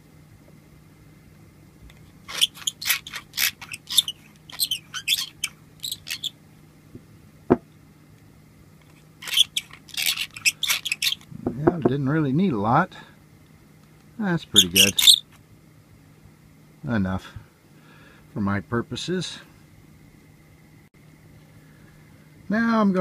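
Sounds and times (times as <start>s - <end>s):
reamer scraping pipe bowl: 2.0s - 6.4s, 8.9s - 11.3s, 14.5s - 15.2s.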